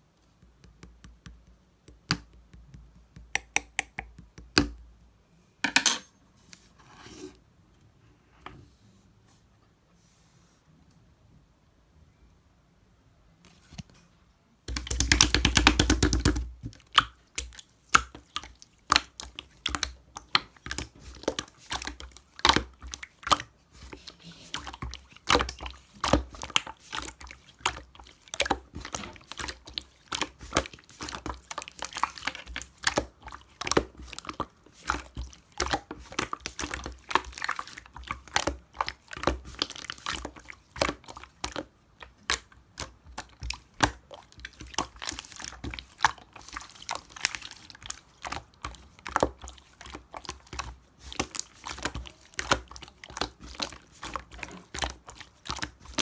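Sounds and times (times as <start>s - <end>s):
slime squished by hand: 14.7s - 56.0s.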